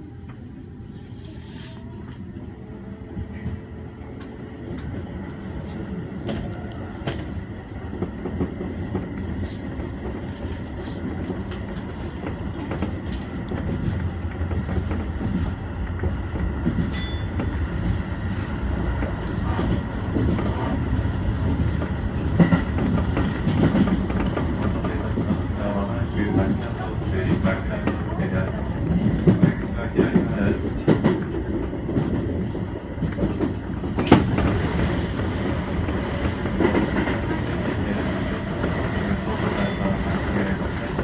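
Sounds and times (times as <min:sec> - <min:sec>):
electric train rumble: 0:00.0 - 0:41.0.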